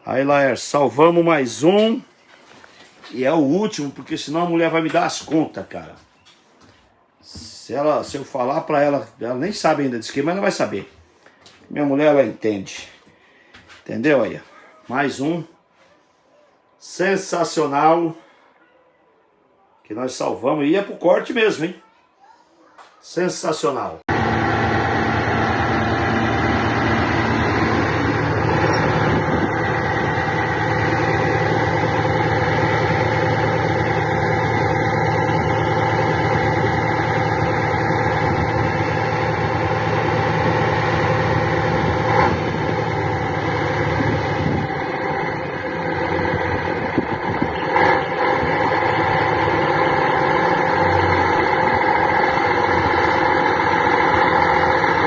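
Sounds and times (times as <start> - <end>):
bus diesel engine idling: 24.1 - 55.0.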